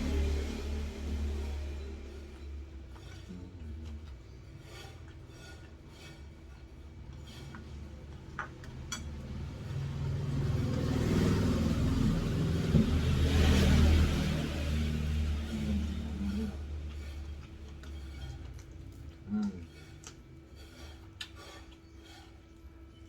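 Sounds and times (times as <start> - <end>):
motor vehicle passing: 0.0 - 5.6, 7.2 - 19.1.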